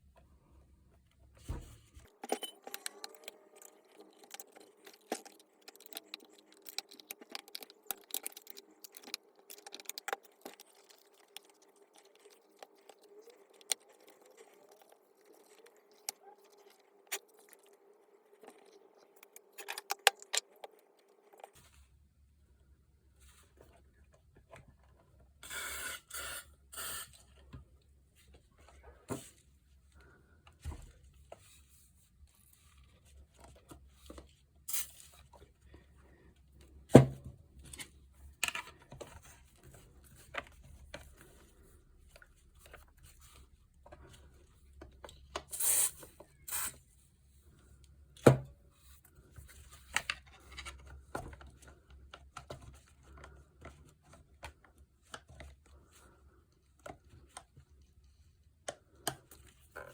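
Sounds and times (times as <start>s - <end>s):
clicks and knocks of handling: 2.0s - 17.6s, 18.4s - 21.6s.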